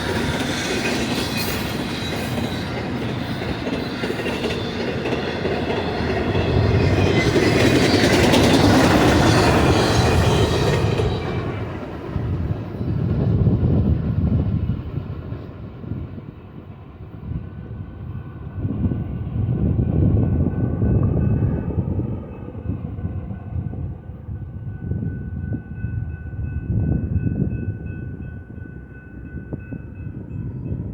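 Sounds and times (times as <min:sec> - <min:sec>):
freight train cars rolling: 0:00.0 - 0:16.6.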